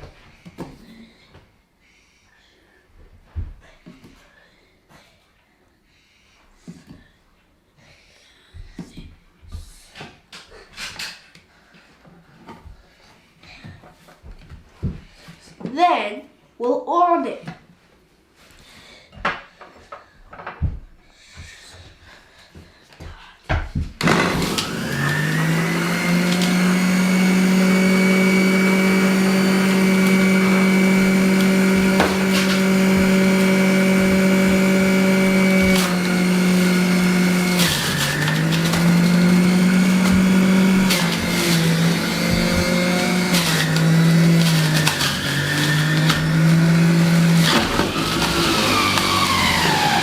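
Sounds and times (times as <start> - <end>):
blender motor whining: 24.0 - 50.0.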